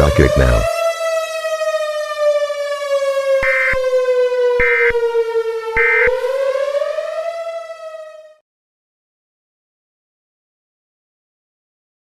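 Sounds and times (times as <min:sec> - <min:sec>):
warning siren long tone: 0:00.0 - 0:08.4.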